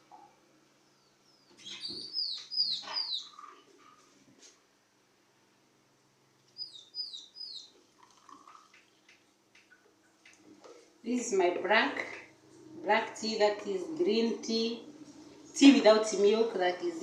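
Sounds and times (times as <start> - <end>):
bird chirping: 0.9 - 3.9, 6.5 - 7.8.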